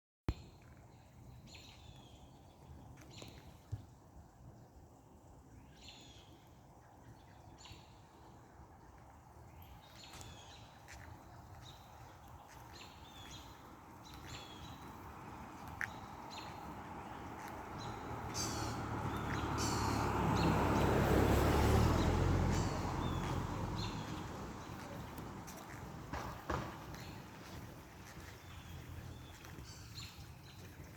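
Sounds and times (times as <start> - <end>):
small birds chirping: 9.0 - 30.9.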